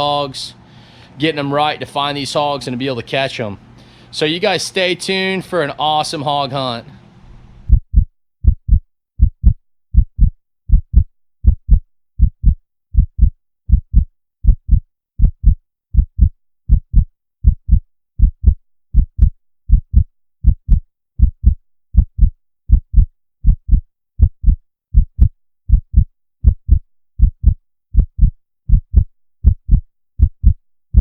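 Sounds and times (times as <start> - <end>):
heartbeat thumps: 7.6 - 31.0.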